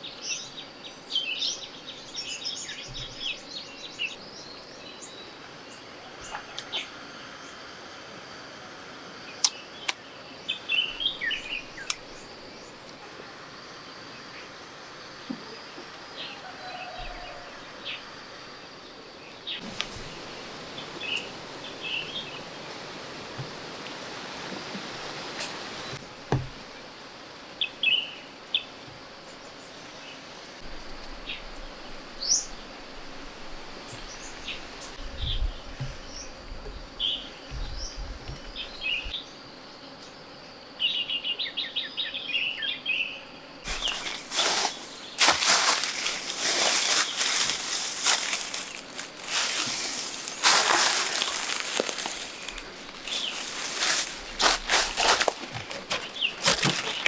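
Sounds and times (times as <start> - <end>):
small birds chirping: 9.3 - 13.0, 41.0 - 57.0
loud rustling and scraping: 43.7 - 57.0.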